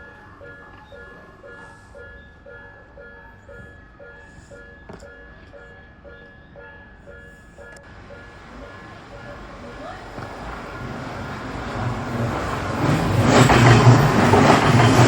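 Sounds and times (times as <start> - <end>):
level-crossing warning bell: 0.0 - 15.0.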